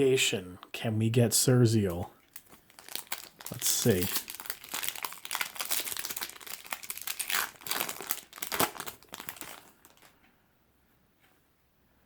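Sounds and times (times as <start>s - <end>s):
wrapper crinkling: 2.3s - 10.2s.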